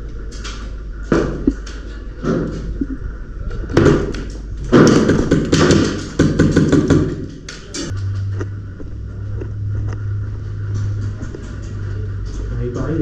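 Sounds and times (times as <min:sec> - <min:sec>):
rapid clicks and thumps: 0:03.7 - 0:08.1.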